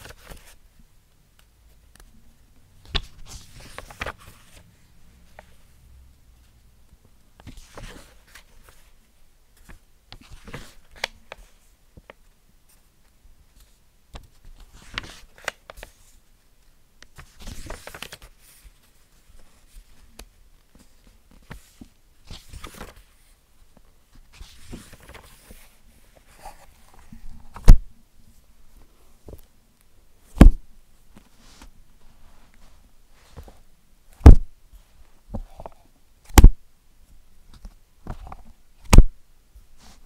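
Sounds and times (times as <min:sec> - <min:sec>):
book pages turning: 0:00.0 - 0:00.6, 0:02.8 - 0:05.6, 0:07.4 - 0:08.9, 0:09.6 - 0:12.2, 0:13.6 - 0:16.2, 0:17.1 - 0:23.2, 0:24.1 - 0:27.8.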